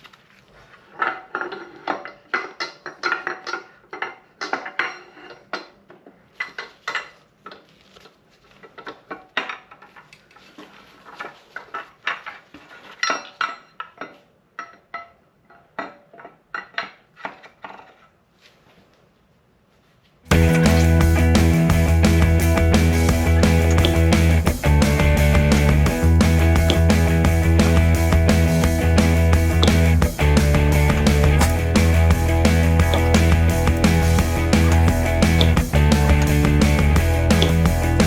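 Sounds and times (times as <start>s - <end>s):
metal parts clinking and clattering: 31.2s - 31.8s.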